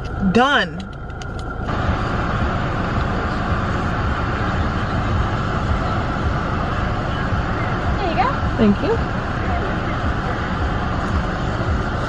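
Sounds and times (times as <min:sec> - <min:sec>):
rushing noise inside car: 0:00.0 - 0:12.0.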